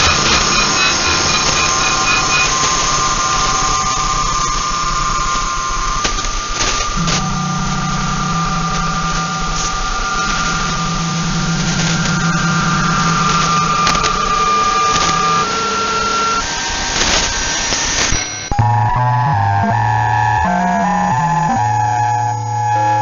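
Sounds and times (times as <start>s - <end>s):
radio static hiss: 0.0s - 18.4s
low buzzing hum: 0.0s - 23.0s
steady whistling tones: 0.0s - 23.0s.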